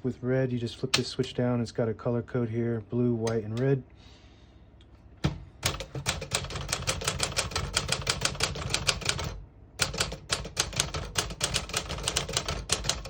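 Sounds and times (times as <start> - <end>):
manual typewriter typing: 5.6 - 13.0.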